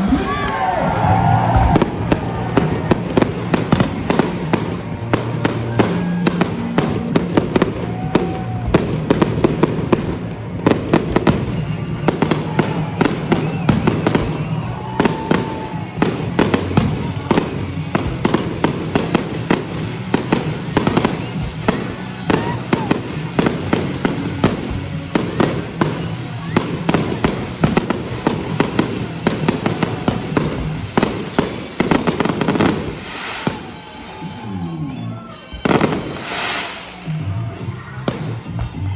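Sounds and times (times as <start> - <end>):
background music: 0.0 - 38.9
fireworks bangs and crackles: 0.0 - 38.9.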